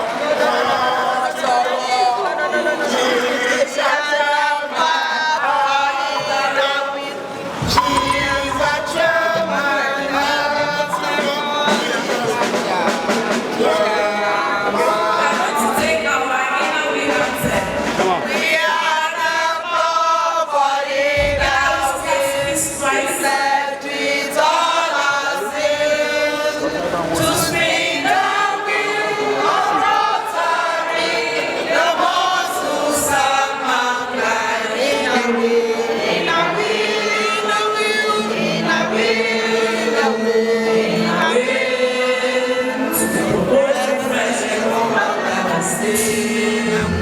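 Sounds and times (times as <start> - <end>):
choir singing: 0.0 - 47.0.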